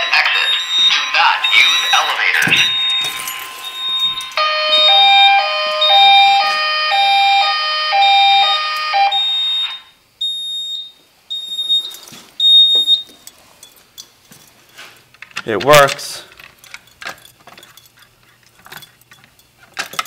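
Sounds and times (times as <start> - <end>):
high-pitched beep: 0.0 - 6.5
hi-lo fire alarm tone: 0.0 - 13.3.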